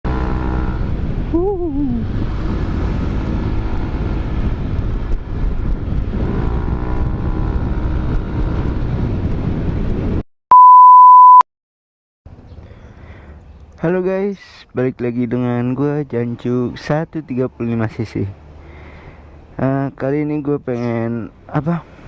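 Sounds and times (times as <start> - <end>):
loud high beep: 10.5 - 11.4.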